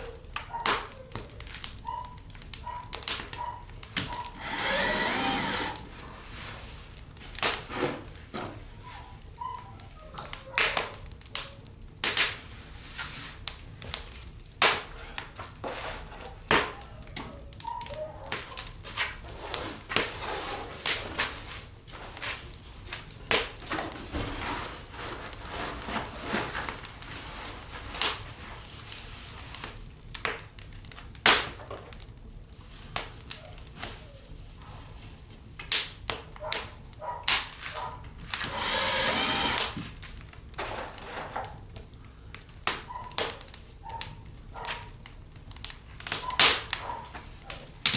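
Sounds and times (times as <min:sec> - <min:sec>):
power tool running: 0:04.3 - 0:05.9, 0:38.4 - 0:39.8.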